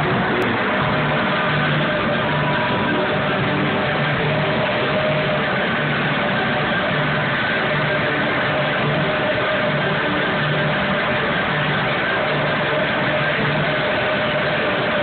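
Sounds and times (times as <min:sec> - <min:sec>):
low pulse: 0:00.0 - 0:10.2
wind machines roaring: 0:00.0 - 0:15.0.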